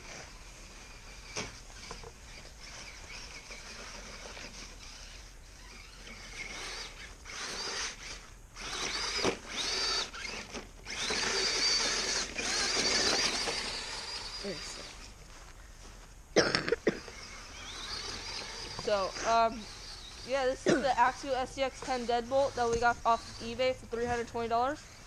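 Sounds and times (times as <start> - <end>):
toy car motor whining: 0.0 - 15.2, 17.0 - 25.0.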